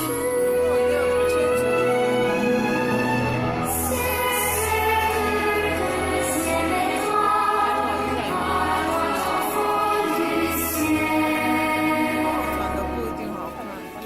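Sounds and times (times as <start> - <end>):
choir singing: 0.0 - 14.0
orchestral music: 0.0 - 14.0.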